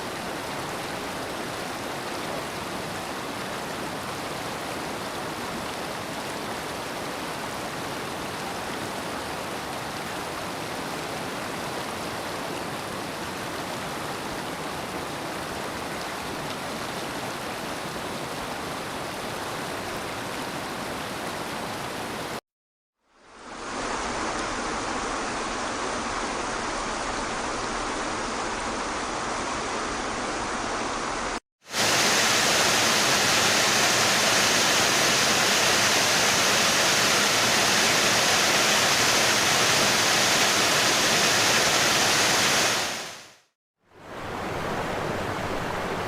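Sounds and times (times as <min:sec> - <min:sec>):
waterfall rushing: 0:23.4 - 0:43.4.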